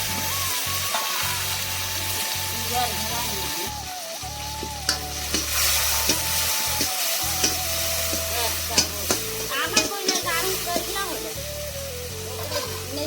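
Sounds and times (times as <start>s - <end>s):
food sizzling in hot oil: 0.0s - 13.0s
spoon clicking against pan: 6.8s - 8.2s, 8.8s - 10.9s.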